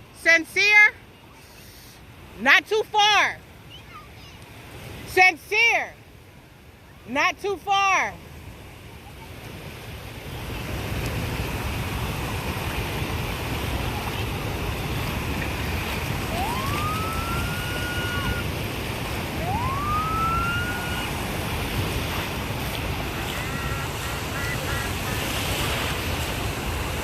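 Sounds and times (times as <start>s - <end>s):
surf washing in: 0.0s - 27.0s
wind on microphone: 9.4s - 27.0s
siren wailing: 16.2s - 21.5s, 23.1s - 25.0s.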